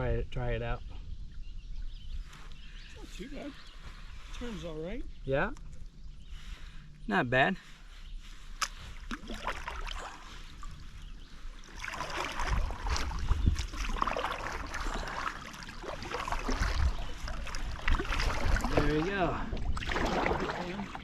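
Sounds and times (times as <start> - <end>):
water splashing against kayak hull: 8.4 - 21.0.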